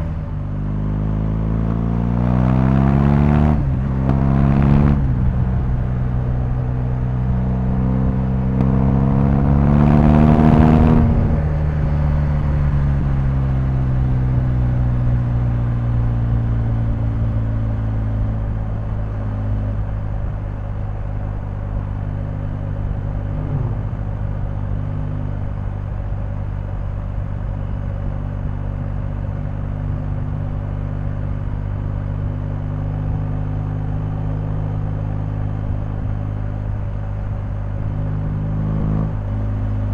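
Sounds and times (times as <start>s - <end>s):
motorcycle engine revving: 0.0s - 14.7s, 22.4s - 26.2s, 37.8s - 39.9s.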